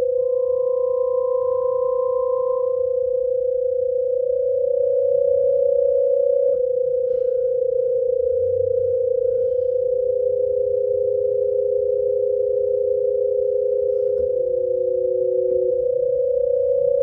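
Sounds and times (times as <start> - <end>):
electronic hum tone: 0.0 - 17.0
lower electronic tone dropping: 0.0 - 17.0
faint low rumble: 5.1 - 17.0.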